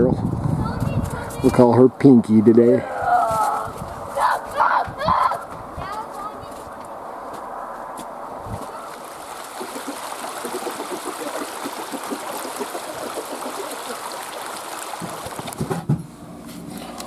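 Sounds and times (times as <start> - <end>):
creek rushing: 8.2 - 15.7.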